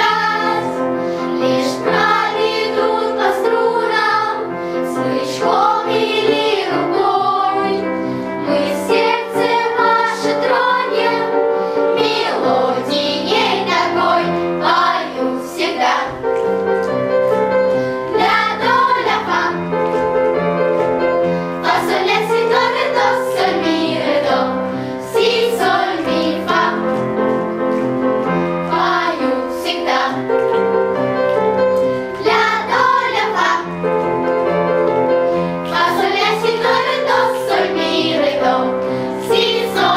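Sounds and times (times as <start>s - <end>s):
voices singing with instruments: 0.0s - 11.4s.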